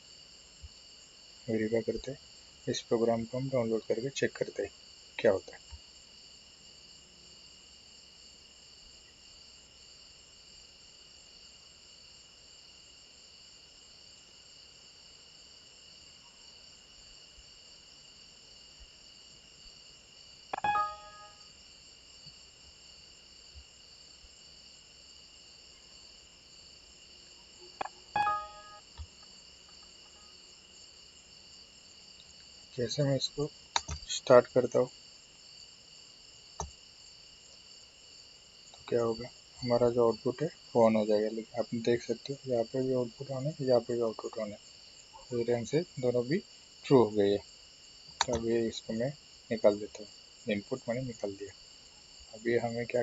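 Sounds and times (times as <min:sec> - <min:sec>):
computer alert chimes: 0:20.6 - 0:21.4, 0:28.2 - 0:28.8
high-pitched background drone: 0:28.2 - 0:28.8.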